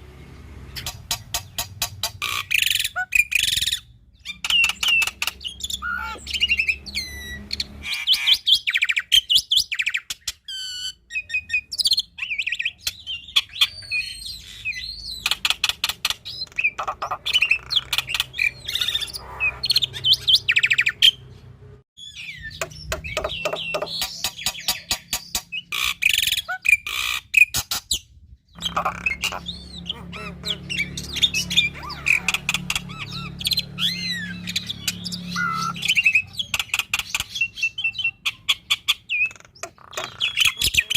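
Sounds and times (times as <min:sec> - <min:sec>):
starling singing: 0:00.6 - 0:27.6, 0:28.5 - 0:40.9.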